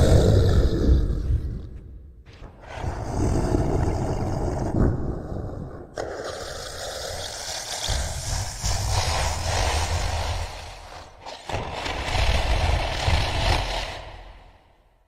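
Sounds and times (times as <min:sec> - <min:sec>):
monster growls: 0:00.0 - 0:01.8, 0:02.4 - 0:14.7.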